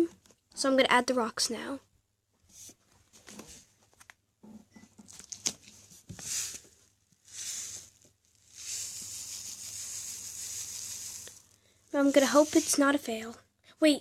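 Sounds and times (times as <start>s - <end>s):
sand pouring with pattering hiss: 6.1s - 13.2s.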